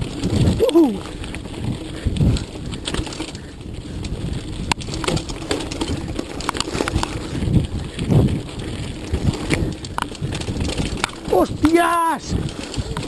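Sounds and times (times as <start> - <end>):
bike knocks and jolts: 0.0 - 13.0
bike rattling: 0.0 - 13.0
tyres rolling over stones: 0.0 - 13.0.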